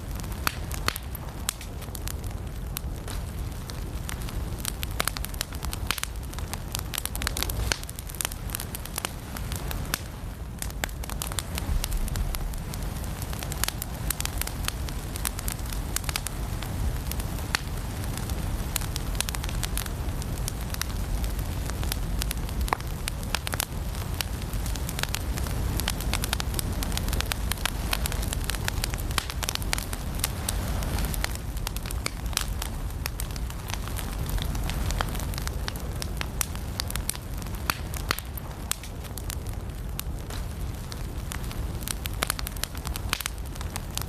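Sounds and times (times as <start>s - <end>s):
firewood crackling and popping: 0.0s - 44.0s
low sound of flames: 0.0s - 44.0s.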